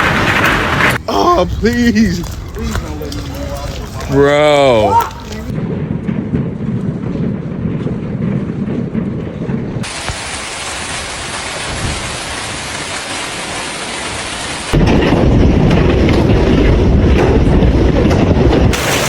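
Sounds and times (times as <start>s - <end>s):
heavy hail and rain: 0.0s - 6.0s, 9.8s - 19.0s.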